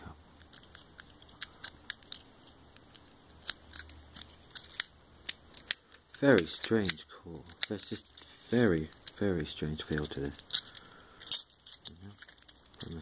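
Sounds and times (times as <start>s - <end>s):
padlock metallic clicks: 0.4s - 2.3s.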